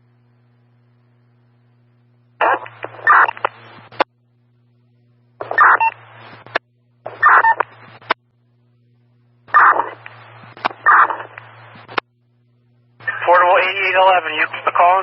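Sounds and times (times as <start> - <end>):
low radio hum: 0.0 - 15.0
radio squelch click: 2.4 - 4.1, 9.6 - 12.0
police radio transmissions: 9.6 - 11.5, 13.0 - 15.0.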